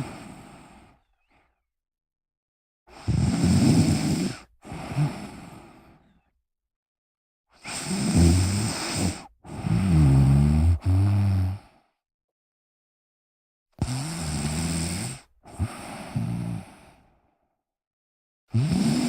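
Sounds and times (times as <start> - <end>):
person snoring: 2.9 - 6.1, 7.6 - 11.8, 13.8 - 17.0, 18.5 - 19.0.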